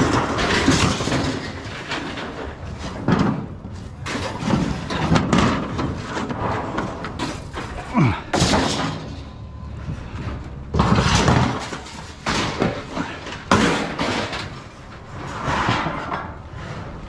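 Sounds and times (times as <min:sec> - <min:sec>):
metal rattling clatter: 0:00.0 - 0:09.4, 0:10.7 - 0:17.0.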